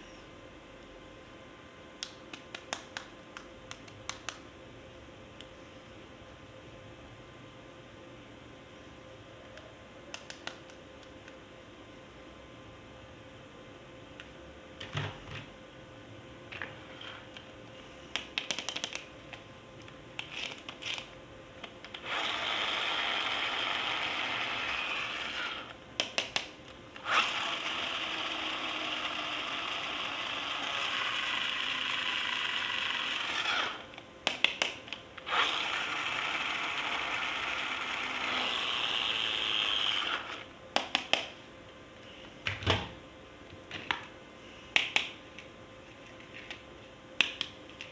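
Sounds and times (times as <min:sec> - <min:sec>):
toy motor and gears whirring: 0:22.0 - 0:25.8, 0:27.0 - 0:33.9, 0:35.2 - 0:40.5.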